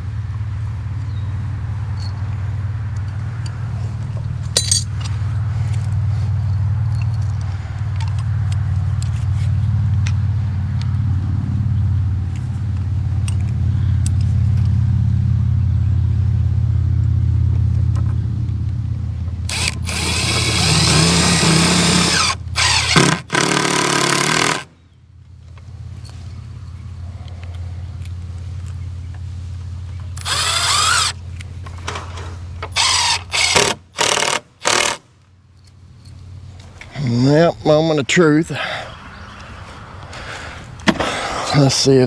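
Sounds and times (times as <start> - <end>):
power drill whining: 19.5 - 24.6, 30.2 - 31.2, 32.7 - 35.0
steady low hum: 24.6 - 42.0.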